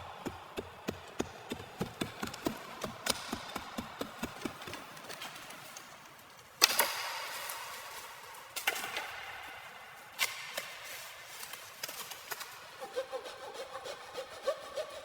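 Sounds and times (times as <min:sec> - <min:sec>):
hand tool chopping wood: 0:00.0 - 0:05.6, 0:06.6 - 0:08.0.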